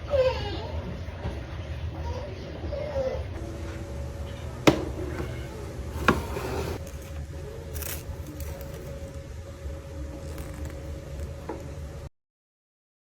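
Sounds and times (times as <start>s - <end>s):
steady low hum: 3.2s - 12.1s
kitchen utensils and dishes clinking: 4.3s - 9.1s.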